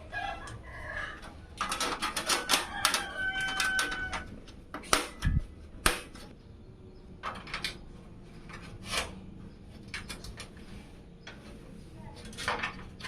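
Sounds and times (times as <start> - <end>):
rooster crowing: 0.0 - 1.4, 2.3 - 4.4
small parts clicking: 1.2 - 5.3.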